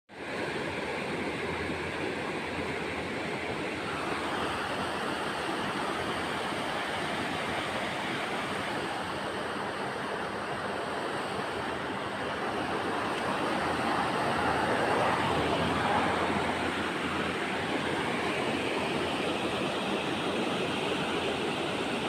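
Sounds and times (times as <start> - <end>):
waves washing ashore: 0.1 - 22.0.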